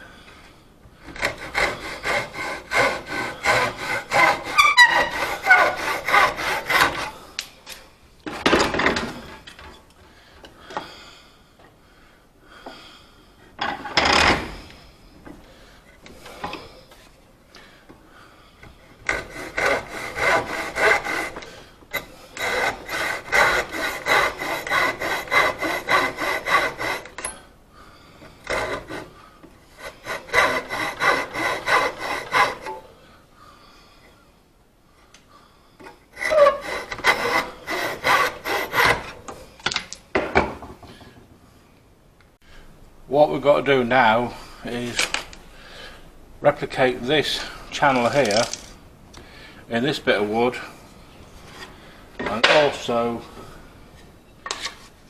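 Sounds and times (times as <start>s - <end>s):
hand saw cutting wood: 1.1s - 7.2s, 19.0s - 27.4s, 28.4s - 29.2s, 29.8s - 32.9s, 36.1s - 39.2s.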